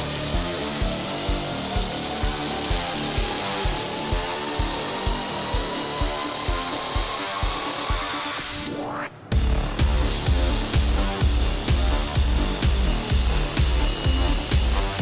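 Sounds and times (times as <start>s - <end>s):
electronic music with steady beat: 0.0s - 15.0s
laser welder hissing: 0.0s - 15.0s.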